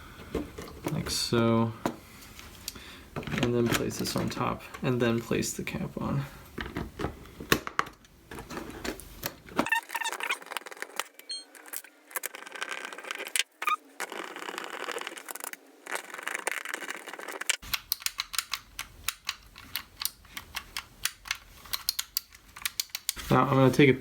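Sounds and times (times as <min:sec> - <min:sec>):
plastic switch parts clicking: 0:17.6 - 0:23.2.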